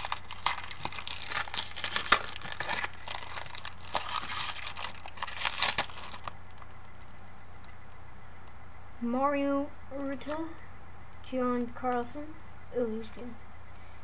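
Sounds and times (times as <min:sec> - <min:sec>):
foil wrapper crinkling and tearing: 0:00.0 - 0:06.7.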